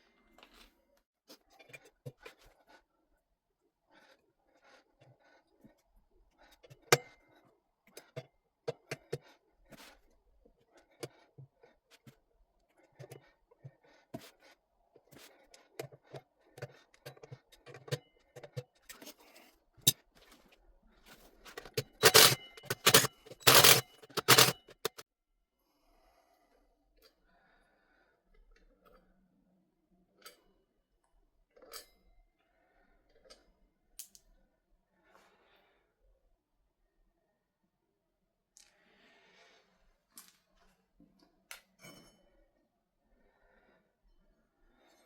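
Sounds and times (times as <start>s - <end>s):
metal scraping clatter: 21.5s - 25.0s
metal tools clinking: 21.5s - 25.0s.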